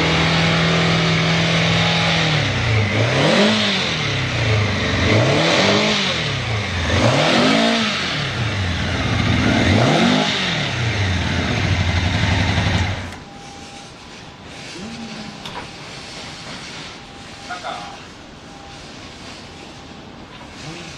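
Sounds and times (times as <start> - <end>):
motorcycle engine idling and revving: 0.0 - 13.3.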